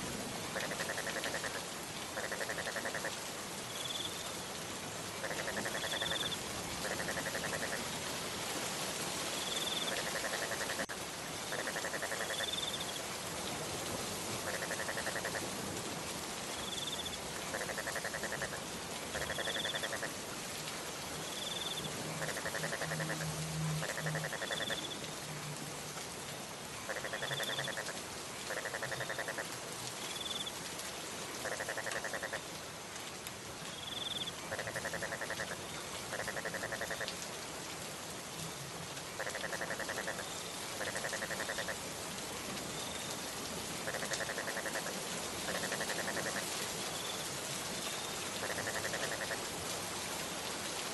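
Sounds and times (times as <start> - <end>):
steady rain: 0.0 - 50.9
frog calling in rattling trills: 0.6 - 1.6, 2.2 - 3.2, 5.2 - 7.8, 9.5 - 13.0, 14.4 - 15.5, 16.6 - 18.6, 19.2 - 20.1, 21.6 - 25.0, 26.9 - 29.5, 31.4 - 32.4, 33.8 - 37.1, 39.2 - 41.8, 43.8 - 44.9, 45.5 - 46.5, 48.4 - 49.4.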